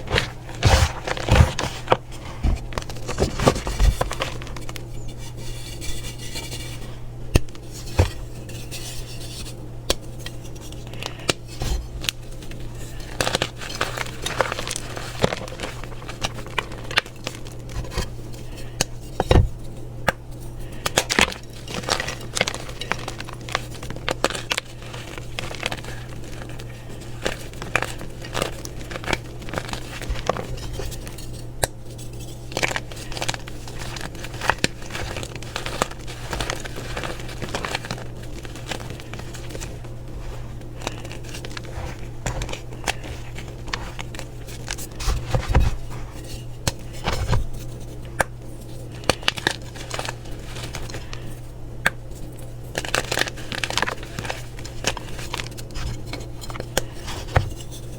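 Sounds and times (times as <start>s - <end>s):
chalk blocks crunching by hand: 0.0s - 4.9s
steady low hum: 0.0s - 57.9s.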